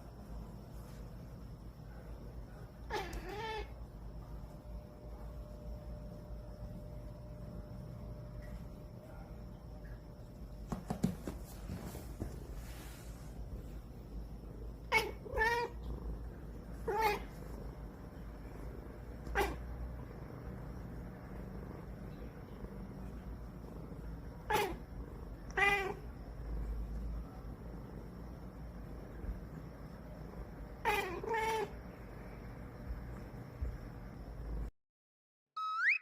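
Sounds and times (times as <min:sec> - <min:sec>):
cat meowing: 0:02.9 - 0:03.8, 0:14.9 - 0:15.8, 0:16.8 - 0:17.3, 0:19.3 - 0:19.6, 0:25.5 - 0:26.0, 0:30.8 - 0:31.7.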